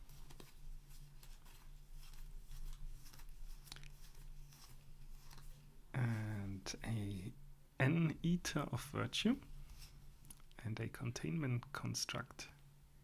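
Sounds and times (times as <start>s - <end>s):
low electrical hum: 0.0s - 13.0s
trading cards being flipped: 0.1s - 5.6s.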